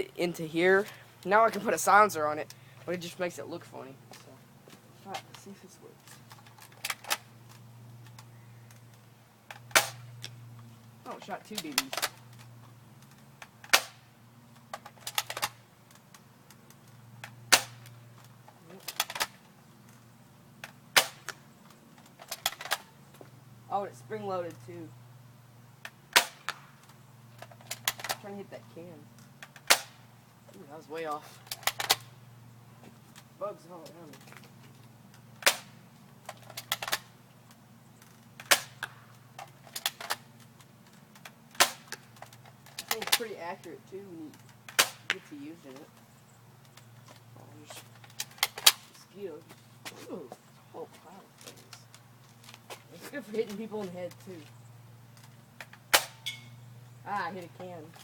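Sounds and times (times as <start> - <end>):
gun handling clicks and rattles: 6.0 - 23.3, 25.8 - 28.2, 31.1 - 32.2, 34.1 - 43.4, 44.3 - 49.6
airsoft rifle firing snap: 9.7 - 10.1, 17.5 - 17.9, 20.9 - 21.4, 26.1 - 26.7
airsoft rifle shots: 9.7 - 10.1, 13.6 - 14.1, 17.5 - 17.9, 20.9 - 21.4, 26.1 - 26.8, 29.6 - 30.0, 35.4 - 35.8, 55.9 - 56.5.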